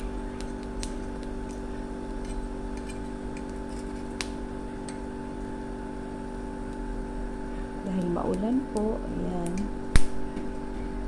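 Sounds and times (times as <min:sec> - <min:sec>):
chestnuts ticking while roasting: 0:00.0 - 0:11.0
mechanical hum: 0:00.0 - 0:11.0.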